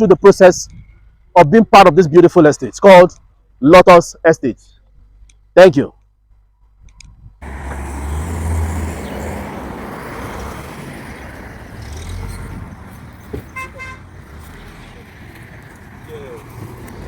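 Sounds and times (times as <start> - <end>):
road traffic passing: 4.2 - 17.0
vehicle rumbling by: 7.4 - 17.0
car horn toots: 13.4 - 14.2.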